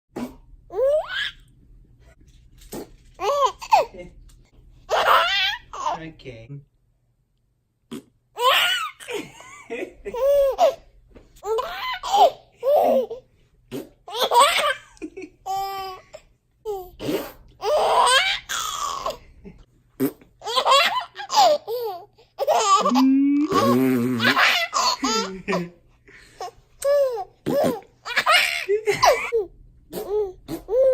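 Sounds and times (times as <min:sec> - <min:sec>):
baby laughing: 0:00.7 - 0:01.5, 0:03.2 - 0:04.2, 0:04.9 - 0:06.0, 0:08.4 - 0:19.3, 0:20.4 - 0:25.8, 0:26.4 - 0:30.9.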